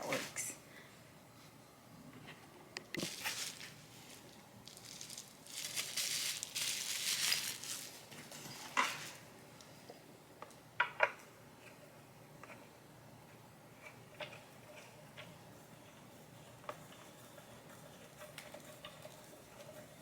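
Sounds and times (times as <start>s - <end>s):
packaging crinkling: 3.0s - 9.2s.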